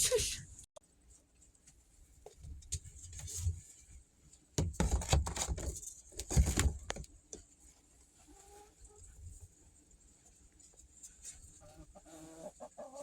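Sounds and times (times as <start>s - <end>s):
rattling and knocking handling: 4.6s - 7.1s.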